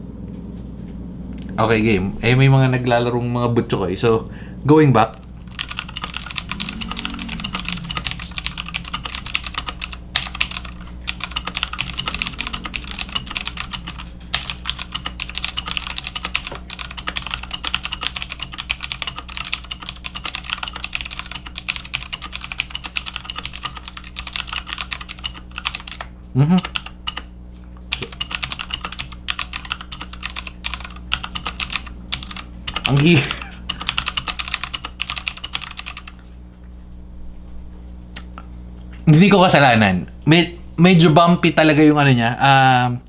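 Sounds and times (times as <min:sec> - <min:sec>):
clicky keyboard typing: 0:05.4 - 0:27.3, 0:27.9 - 0:36.2.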